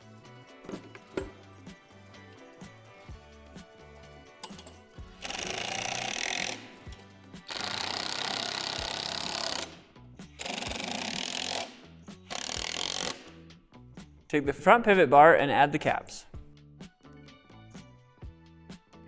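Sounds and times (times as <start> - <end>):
background music: 0.0 - 19.0
power driver driving screws: 4.4 - 9.8, 10.4 - 13.4.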